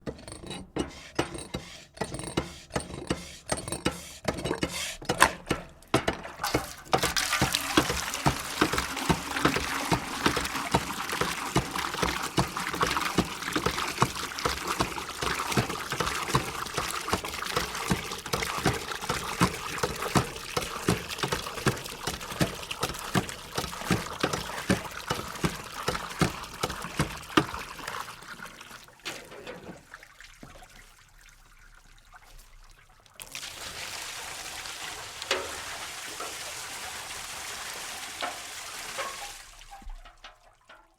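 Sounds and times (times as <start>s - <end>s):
pump handle knocking: 0.0s - 28.2s
water gushing from spout: 0.0s - 40.9s.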